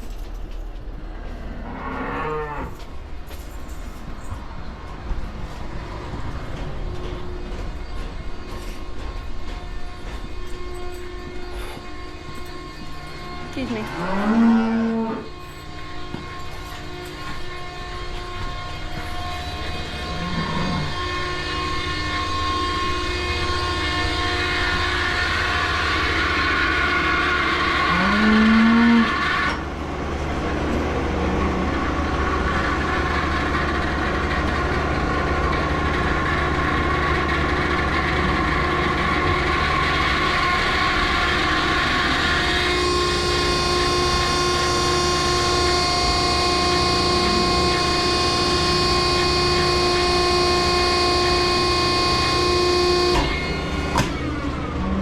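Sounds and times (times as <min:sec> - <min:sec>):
barn machinery humming: 0:00.0 - 0:55.0
cow mooing: 0:01.4 - 0:02.8, 0:13.2 - 0:15.4, 0:18.8 - 0:21.3, 0:27.8 - 0:29.2, 0:42.6 - 0:52.5.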